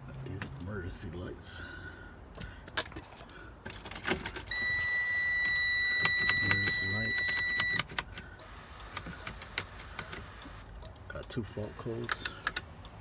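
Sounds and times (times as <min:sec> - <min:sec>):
high-pitched warning buzzer: 0:04.5 - 0:07.8
scattered clicks: 0:06.0 - 0:13.0.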